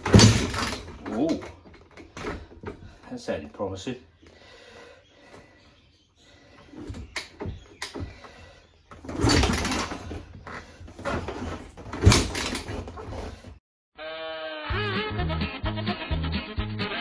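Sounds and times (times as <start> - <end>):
motorcycle kick-start clunks: 0.0 - 3.0, 6.8 - 13.4.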